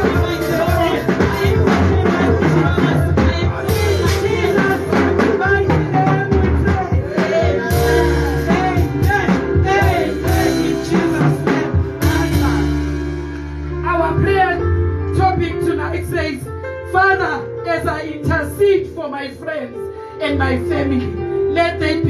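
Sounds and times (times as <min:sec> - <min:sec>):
person singing: 0:00.0 - 0:13.0
drums: 0:00.0 - 0:14.5
bass: 0:00.0 - 0:22.0.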